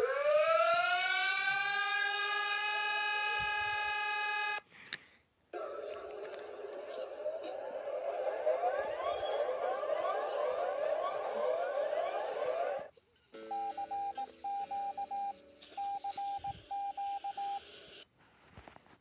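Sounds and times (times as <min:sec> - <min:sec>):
electronic siren rising sweeps: 0:00.0 - 0:04.6, 0:05.6 - 0:12.9.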